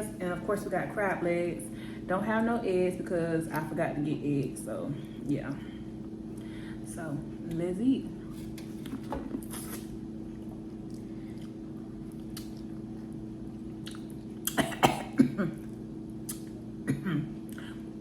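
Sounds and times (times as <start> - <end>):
eating clicks and chewing: 10.8 - 14.6
cough-like sharp sounds: 14.5 - 15.6.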